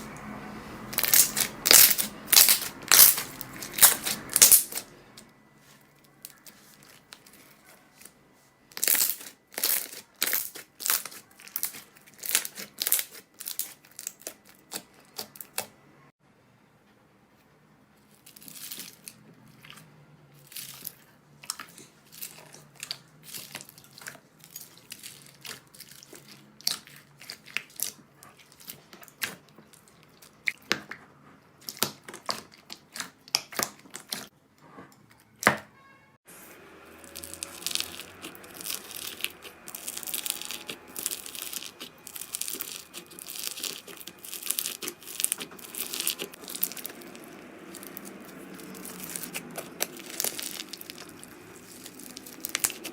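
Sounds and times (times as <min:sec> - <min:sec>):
slime popping and crackling: 0:00.9 - 0:04.9, 0:08.8 - 0:15.7, 0:37.0 - 0:52.9.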